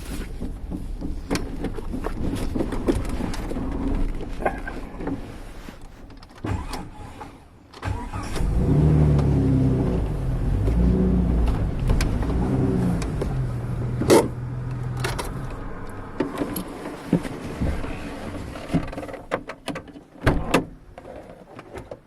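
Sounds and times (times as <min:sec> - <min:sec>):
vehicle engine hum: 0:08.2 - 0:19.1.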